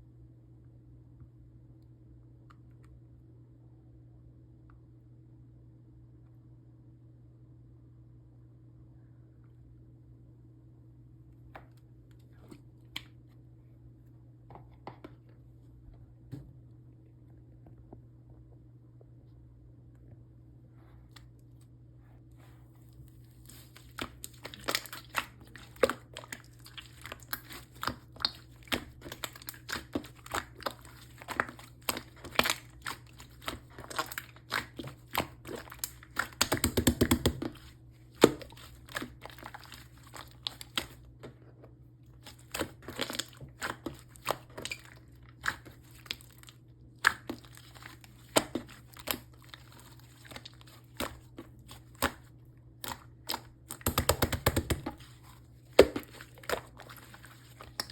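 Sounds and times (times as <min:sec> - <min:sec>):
slime clicking and popping: 0:23.5 - 0:41.0, 0:52.8 - 0:55.0.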